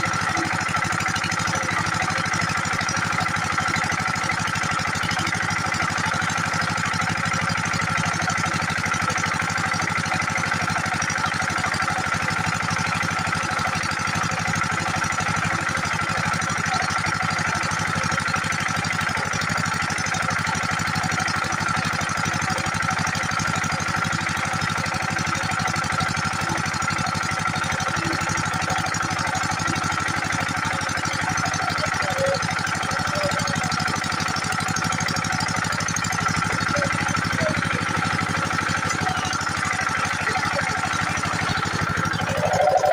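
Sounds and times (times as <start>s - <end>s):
diesel engine running steadily: 0.0s - 42.9s.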